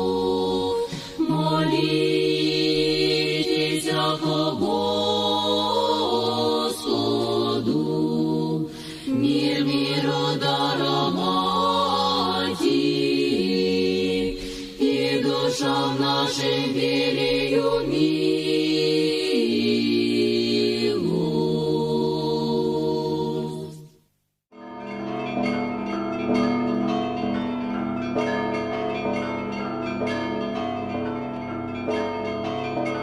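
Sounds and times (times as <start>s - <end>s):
choir chanting in held chords: 0.0s - 24.0s.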